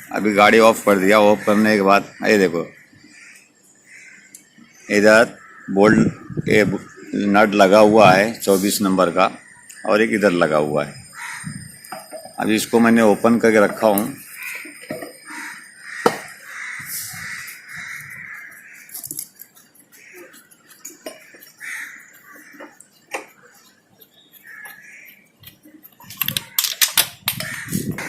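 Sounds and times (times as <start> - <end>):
hand tools clinking on metal: 25.9 - 27.7.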